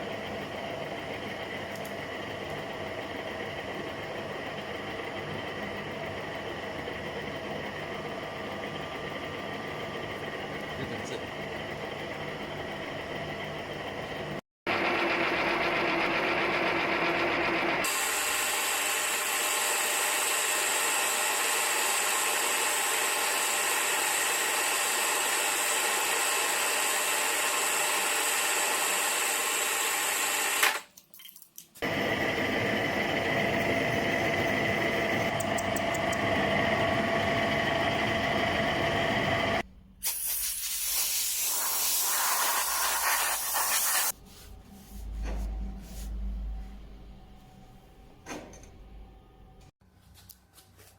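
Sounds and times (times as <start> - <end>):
power tools running: 1.1 - 30.8, 31.8 - 39.6.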